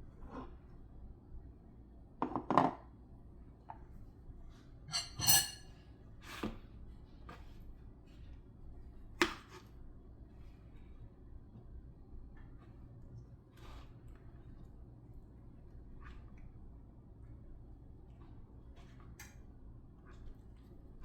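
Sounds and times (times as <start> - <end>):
dish ringing with clear tone: 4.9 - 5.7
utensils and dishes clattering: 4.9 - 5.7.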